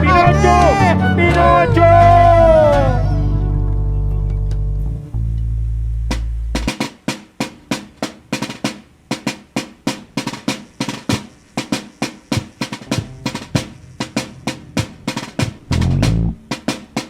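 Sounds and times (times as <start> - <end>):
held low musical note: 0.0 - 6.7, 12.9 - 16.5
drum beats: 6.0 - 17.0.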